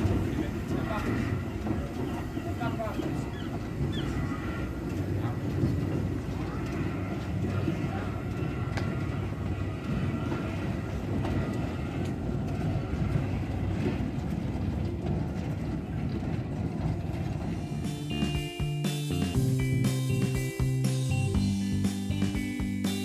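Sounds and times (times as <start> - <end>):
train rumbling: 0.0 - 23.0
music: 17.4 - 23.0.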